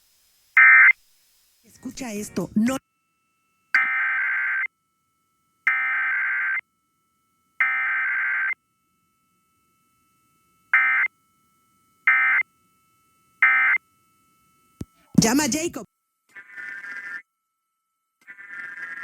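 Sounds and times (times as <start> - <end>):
buzzy data screeches: 3.7 - 4.7, 5.7 - 6.6, 7.6 - 8.6, 10.7 - 11.1, 12.0 - 12.4, 13.4 - 13.8, 15.2 - 17.3, 18.2 - 19.0.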